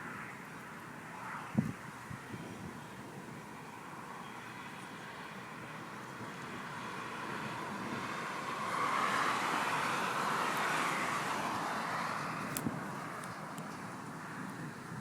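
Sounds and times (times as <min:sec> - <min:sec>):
car tyre and road noise: 0:00.0 - 0:15.0.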